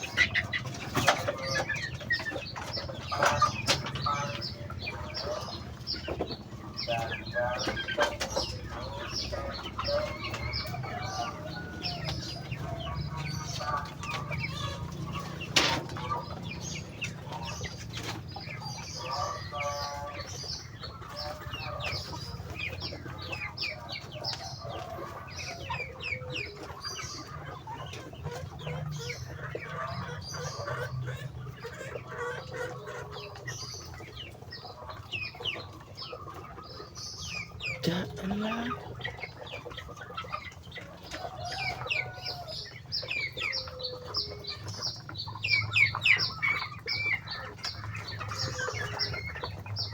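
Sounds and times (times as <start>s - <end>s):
ducks peeping and calling: 0.0s - 49.9s.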